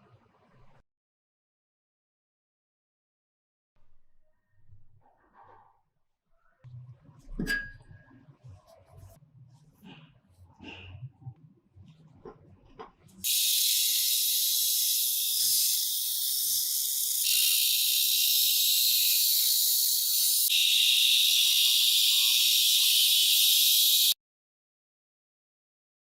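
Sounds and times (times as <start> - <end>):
loud high hiss: 13.3 - 24.2.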